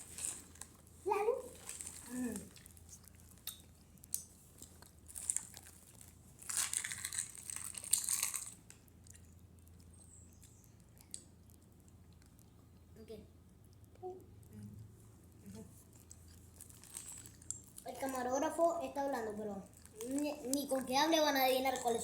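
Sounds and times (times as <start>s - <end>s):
plastic wrapper crinkling: 0.0s - 9.2s, 15.8s - 22.0s.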